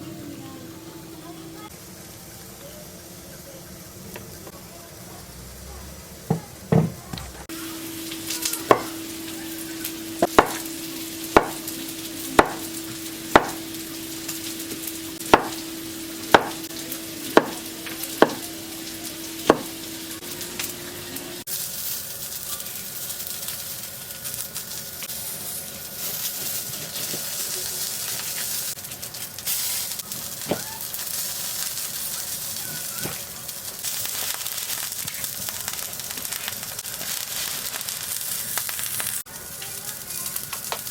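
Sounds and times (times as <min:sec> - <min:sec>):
steady hum: 0:00.0 - 0:01.7, 0:07.3 - 0:21.5
food sizzling in frying pan: 0:00.2 - 0:40.9.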